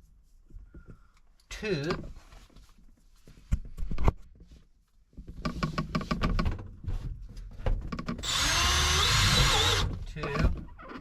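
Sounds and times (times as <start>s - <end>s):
power drill driving a screw: 8.2s - 9.9s.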